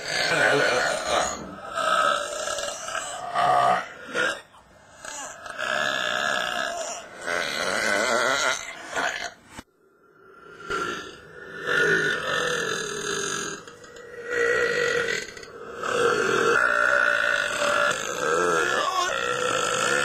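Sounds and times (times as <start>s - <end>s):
person belching loudly: 0.0s - 9.4s, 10.7s - 20.0s.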